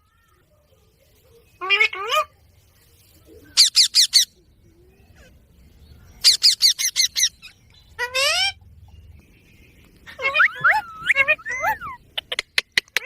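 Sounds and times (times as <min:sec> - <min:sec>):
parrot shrill calls: 0:03.6 - 0:04.3, 0:06.2 - 0:08.6, 0:10.1 - 0:12.0.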